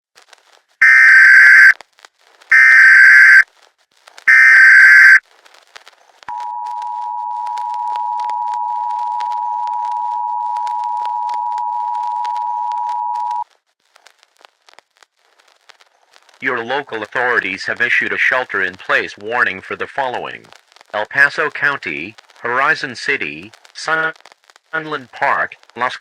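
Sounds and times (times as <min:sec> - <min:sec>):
harsh data tone bursts: 0:00.8 - 0:01.8, 0:02.5 - 0:03.4, 0:04.3 - 0:05.2
two-tone attention signal: 0:04.3 - 0:05.2, 0:06.3 - 0:13.4.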